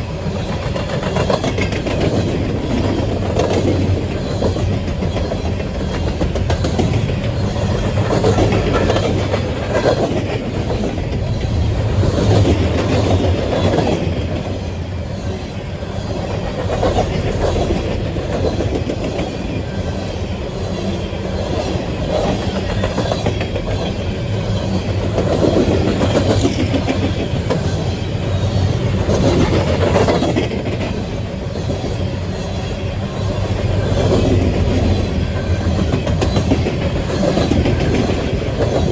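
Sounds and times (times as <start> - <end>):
clickety-clack over rail joints: 0.0 - 38.9
train wheels rumbling on rail: 0.0 - 38.9.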